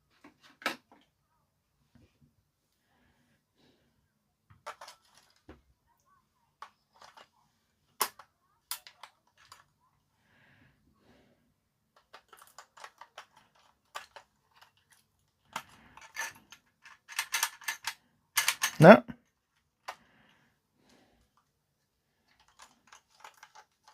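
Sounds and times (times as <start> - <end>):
plastic parts clicking and knocking: 0.1 - 1.1, 4.5 - 5.7, 6.5 - 9.8, 11.9 - 20.3, 22.2 - 23.9.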